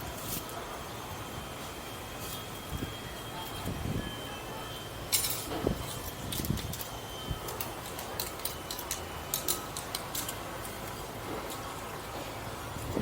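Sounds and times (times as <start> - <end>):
sharp clicks and clinks: 5.1 - 11.7.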